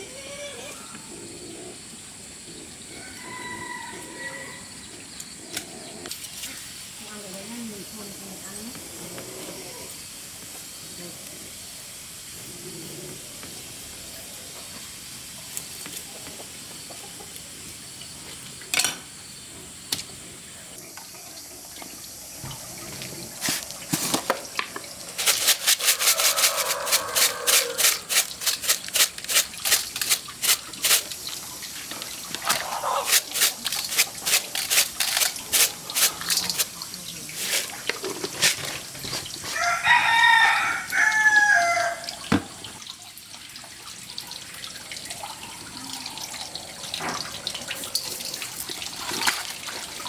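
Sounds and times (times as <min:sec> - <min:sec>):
water running: 0:20.8 - 0:42.8, 0:43.5 - 0:50.0
water splashing and sloshing: 0:21.5 - 0:39.6, 0:46.6 - 0:50.0.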